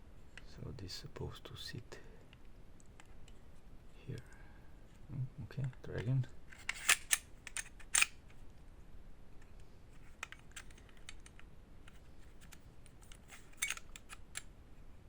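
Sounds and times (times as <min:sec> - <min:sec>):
pistol parts clicking: 0:05.6 - 0:08.4, 0:09.4 - 0:14.6.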